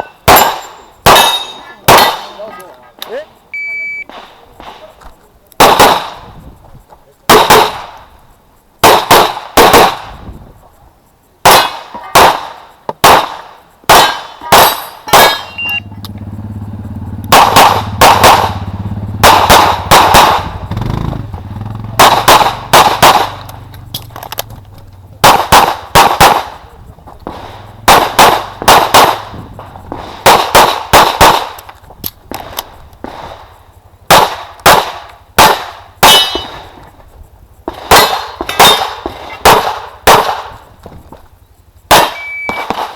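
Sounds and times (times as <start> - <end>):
pistol shots: 0.2 - 2.5, 5.6 - 6.2, 7.3 - 8.0, 8.8 - 10.2, 11.4 - 15.8, 17.2 - 20.6, 21.9 - 23.6, 25.2 - 31.6, 32.3 - 36.7, 37.6 - 40.6, 41.9 - 42.9.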